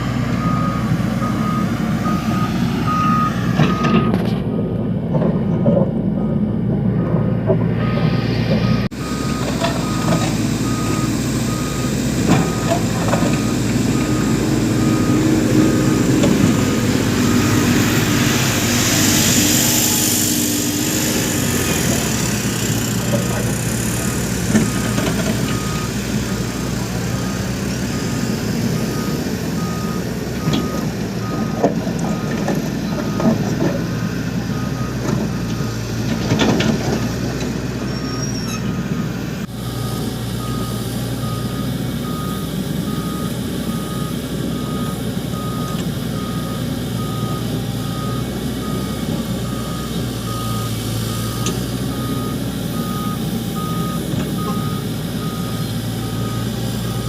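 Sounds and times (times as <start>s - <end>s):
diesel engine running: 0.0s - 57.0s
backup alarm beeping: 7.8s - 18.0s, 27.1s - 35.8s, 39.8s - 57.0s.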